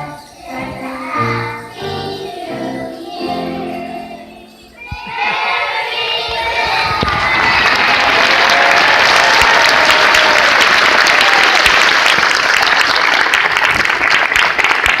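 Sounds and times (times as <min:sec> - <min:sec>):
people cheering: 0:04.8 - 0:15.0
audience applauding: 0:06.9 - 0:15.0.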